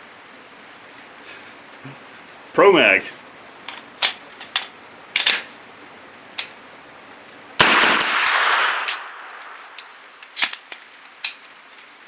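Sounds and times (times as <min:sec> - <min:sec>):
gun handling clicks: 0:03.6 - 0:05.6, 0:06.4 - 0:06.6, 0:07.7 - 0:11.9
rapid gunshots: 0:07.6 - 0:08.9.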